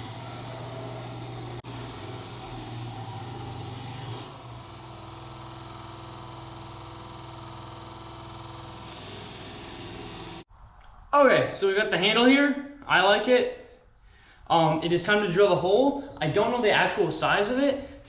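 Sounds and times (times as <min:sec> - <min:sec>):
electric power tool cutting wood: 0:00.0 - 0:10.5.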